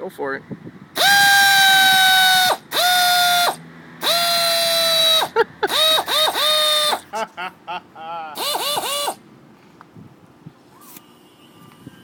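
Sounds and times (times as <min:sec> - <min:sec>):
air ratchet whining: 0:01.0 - 0:07.1, 0:08.4 - 0:09.2.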